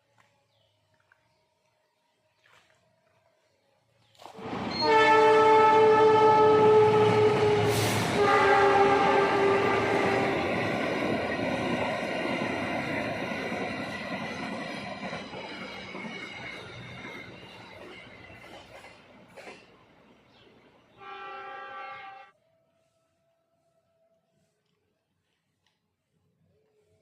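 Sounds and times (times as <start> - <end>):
loud horn: 4.6 - 10.6, 21.0 - 22.4.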